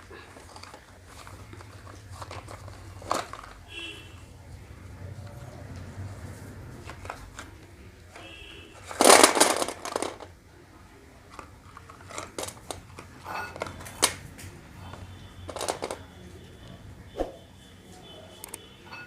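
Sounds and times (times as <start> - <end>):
packaging rustling: 0.0 - 3.7, 8.8 - 10.3.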